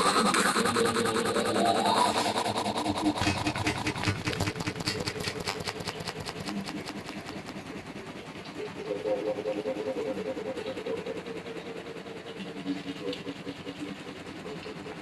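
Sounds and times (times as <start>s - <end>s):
rising synthetic tone: 0.0s - 5.1s
rapid buzzing click pulse: 0.0s - 8.7s
low hum: 0.0s - 15.0s.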